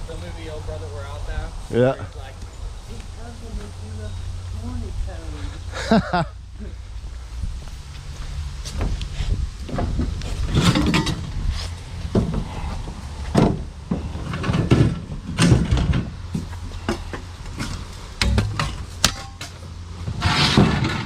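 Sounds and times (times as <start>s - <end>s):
steady low rumble: 0.0s - 20.1s
knocks clunks and scrapes: 8.6s - 21.0s.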